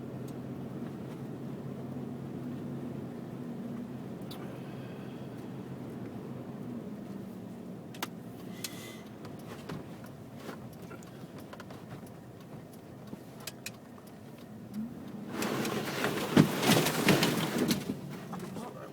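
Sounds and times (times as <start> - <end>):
car driving rumble: 0.0 - 18.9
small clicks and knocks: 7.9 - 15.8.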